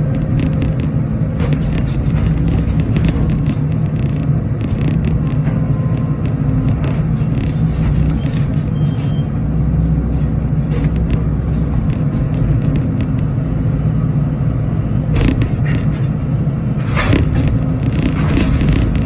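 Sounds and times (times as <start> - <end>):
excavator diesel engine running: 0.0 - 19.0
scattered knocks: 0.1 - 9.2, 15.1 - 16.1.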